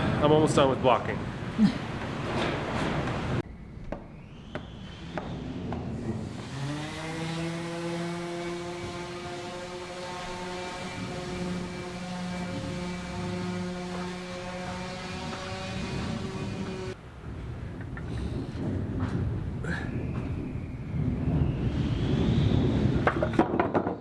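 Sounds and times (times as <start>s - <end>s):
motor spinning up: 4.6s - 17.0s.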